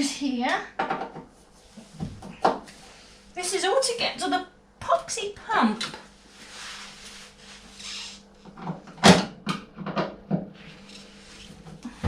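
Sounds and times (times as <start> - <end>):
soft scraping rustle: 6.1 - 8.2.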